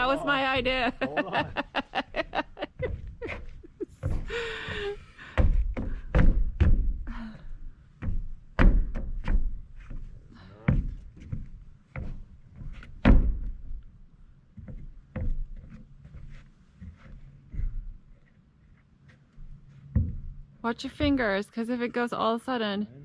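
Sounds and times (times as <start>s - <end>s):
heavy thuds and knocks: 0.0s - 13.8s, 19.9s - 21.4s.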